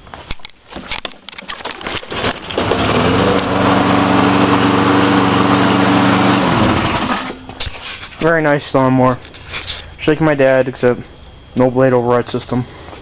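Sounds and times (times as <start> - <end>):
lawnmower engine starting: 1.6 - 8.0.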